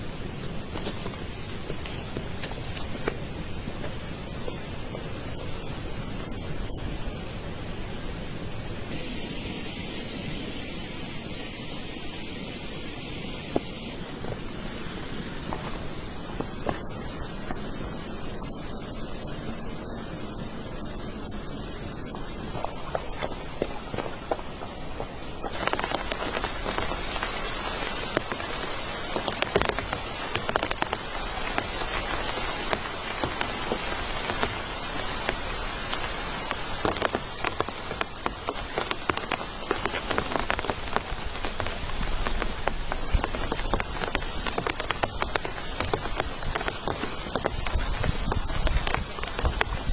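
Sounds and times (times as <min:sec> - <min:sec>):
constant noise bed: 0:00.0 - 0:49.9
rain falling: 0:00.0 - 0:49.9
steady hiss: 0:00.0 - 0:49.9
raindrops ticking on a surface: 0:22.6 - 0:49.9.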